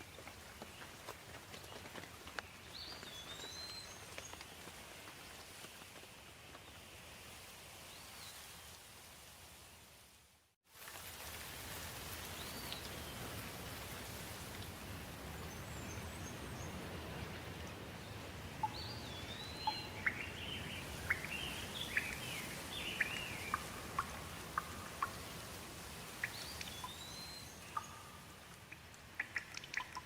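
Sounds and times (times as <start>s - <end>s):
steady rain hiss: 0.0s - 30.0s
birds chirping: 18.1s - 25.4s, 26.0s - 28.5s.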